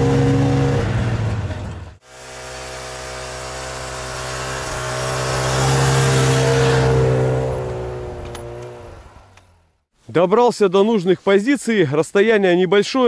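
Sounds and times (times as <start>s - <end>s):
snow vehicle engine running: 0.0s - 9.7s.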